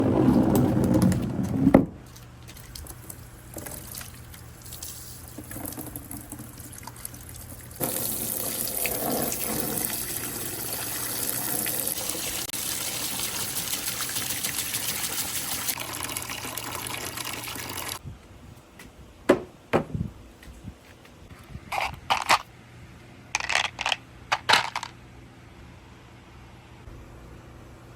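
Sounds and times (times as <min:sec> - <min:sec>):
water running through marble run: 0:02.0 - 0:18.0.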